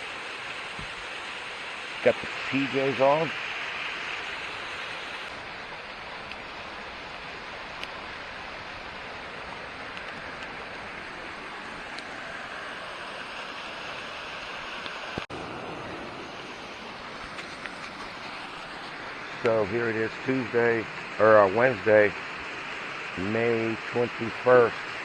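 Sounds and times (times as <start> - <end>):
waterfall rushing: 0.0 - 25.0.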